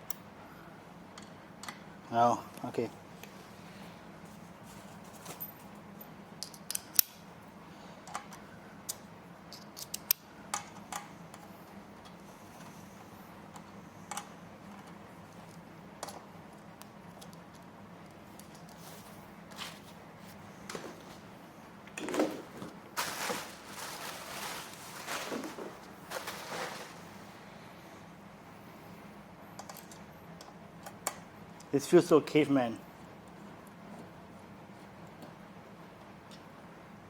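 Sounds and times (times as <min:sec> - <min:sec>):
scraping and rustling: 0:18.7 - 0:21.3, 0:22.0 - 0:27.4.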